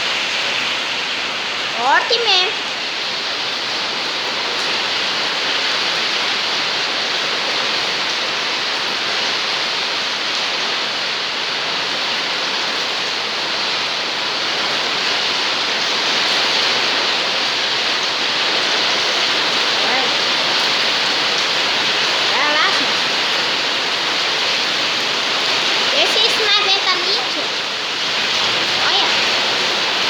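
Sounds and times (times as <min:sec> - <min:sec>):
heavy rain pouring: 0:00.0 - 0:30.0
strong wind: 0:13.2 - 0:30.0.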